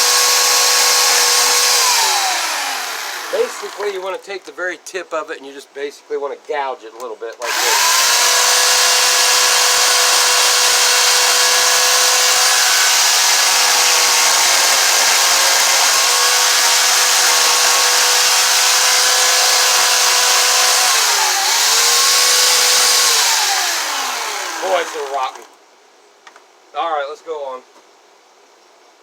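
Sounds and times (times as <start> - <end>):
chainsaw cutting log: 0.0 - 4.2, 7.4 - 25.5.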